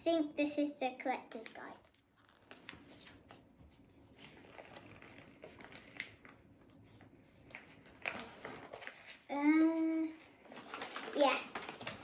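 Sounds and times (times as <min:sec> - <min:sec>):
packaging rustling and clicking: 0:10.4 - 0:12.0.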